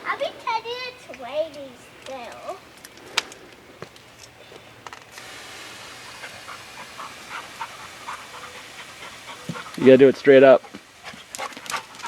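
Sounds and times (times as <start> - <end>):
steady hiss: 0.0 - 12.0
dog panting: 6.1 - 12.0.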